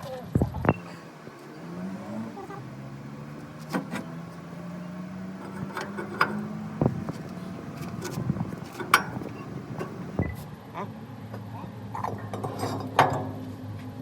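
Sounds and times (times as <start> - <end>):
truck engine idling: 0.7 - 10.7
metallic knocks and clicks: 3.3 - 10.3.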